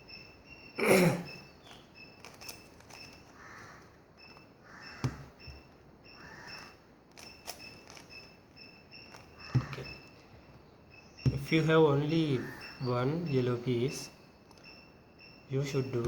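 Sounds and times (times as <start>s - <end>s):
cricket chirping: 0.0s - 16.0s
puzzle cube clicking and turning: 1.6s - 10.2s.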